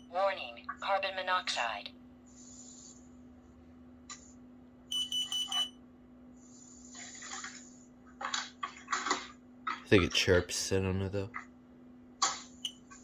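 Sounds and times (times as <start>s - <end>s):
alarm high beeps: 4.9s - 5.7s.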